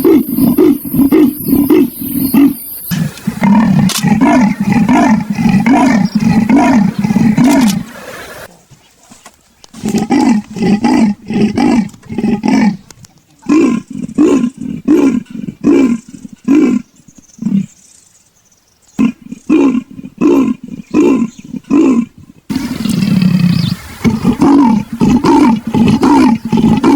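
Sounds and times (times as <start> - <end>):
leopard rasping grunts: 0.0 - 8.4, 9.8 - 17.8, 19.0 - 26.9.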